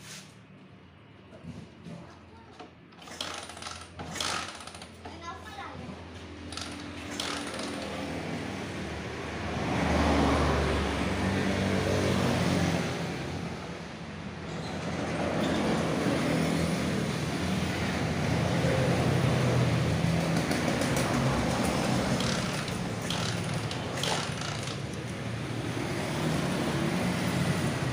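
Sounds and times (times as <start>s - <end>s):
engine revving: 6.5s - 13.3s, 16.4s - 27.9s.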